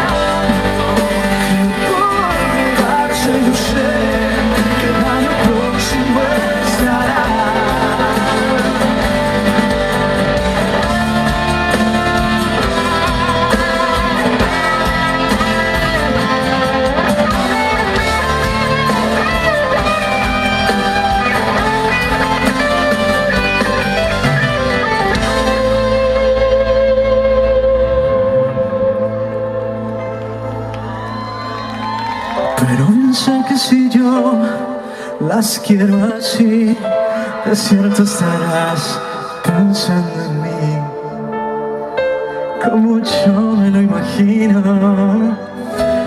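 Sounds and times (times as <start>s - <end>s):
guitar lead melody: 0.0s - 32.5s
live pop band playing: 0.0s - 46.0s.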